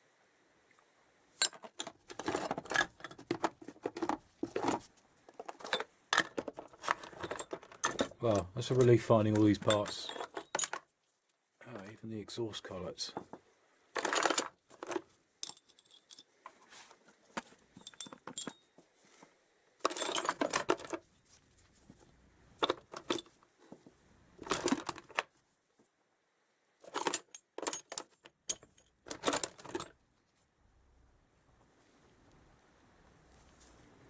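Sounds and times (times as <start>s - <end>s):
metal parts clinking and rattling: 1.4s - 10.9s, 14.0s - 16.6s, 17.4s - 18.7s, 19.8s - 21.1s, 22.6s - 23.4s, 24.4s - 25.2s, 26.8s - 30.0s.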